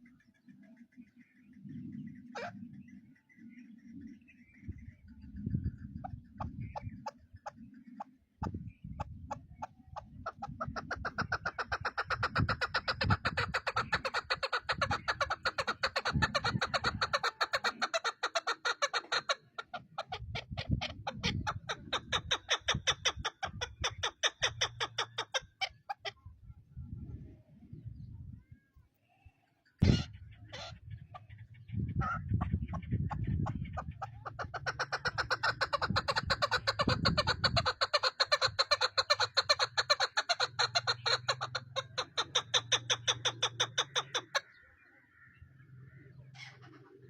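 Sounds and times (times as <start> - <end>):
partridge clucking call: 5.8 - 26.2, 29.8 - 45.4.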